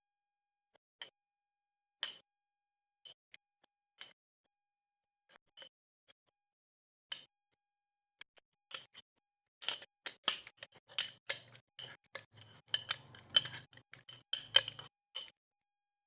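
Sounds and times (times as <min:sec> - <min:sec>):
spoon clinking against bowl: 0:11.4 - 0:14.9.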